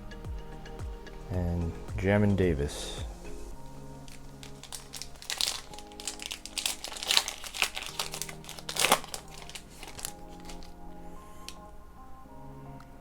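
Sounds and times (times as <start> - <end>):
soft background music: 0.0 - 13.0
trading cards crinkling and rustling: 3.7 - 11.6.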